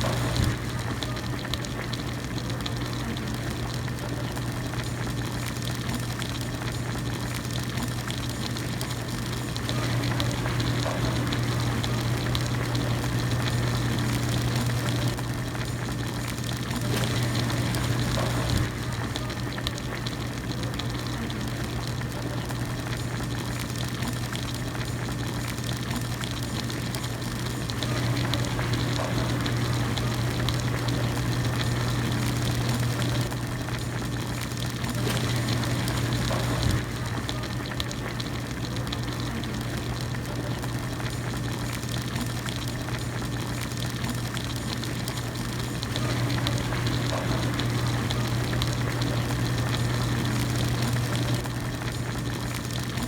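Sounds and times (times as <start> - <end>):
broth bubbling in a pot: 0.0 - 53.0.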